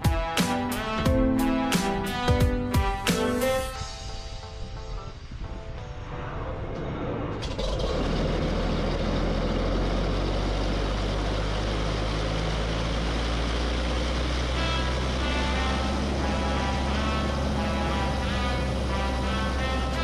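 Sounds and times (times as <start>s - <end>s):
propeller plane engine cruising: 6.4s - 20.0s.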